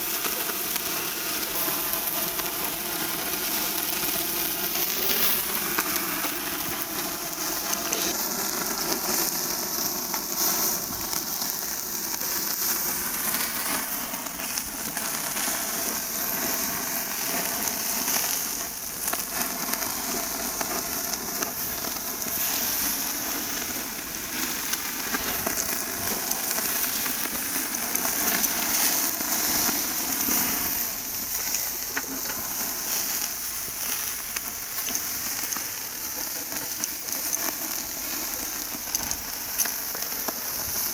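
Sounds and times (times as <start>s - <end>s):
fat spitting on coals: 0.0s - 40.9s
meat sizzling over charcoal: 0.0s - 40.9s.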